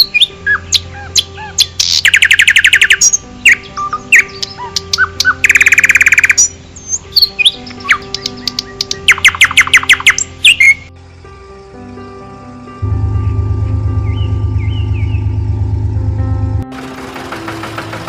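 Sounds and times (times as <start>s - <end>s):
loud fast bird trills: 0.0s - 6.5s, 7.2s - 10.9s
birds chirping and whistling: 0.0s - 10.9s, 13.9s - 15.8s
faint low hum: 12.8s - 16.6s.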